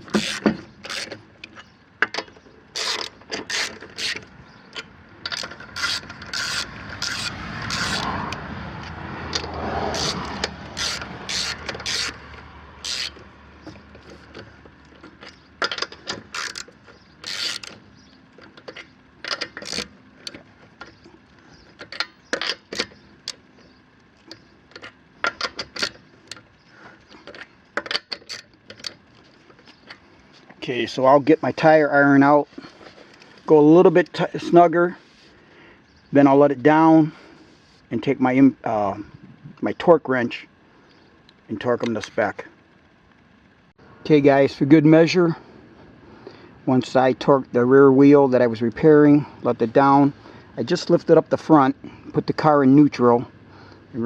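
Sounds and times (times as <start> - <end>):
lug nuts clinking: 0.0 - 26.5, 27.1 - 30.0
metallic rasping: 2.6 - 8.4, 9.3 - 21.0.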